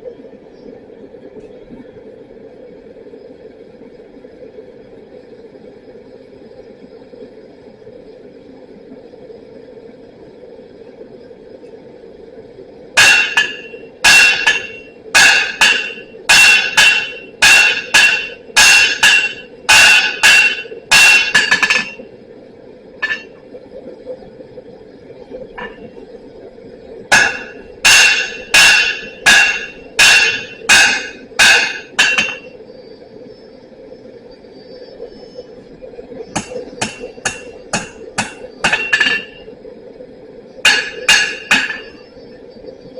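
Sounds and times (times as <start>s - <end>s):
steady hum: 0.0s - 42.9s
hammer ringing on anvil: 13.0s - 22.0s, 23.0s - 23.3s, 27.1s - 32.5s, 36.4s - 39.4s, 40.7s - 41.9s.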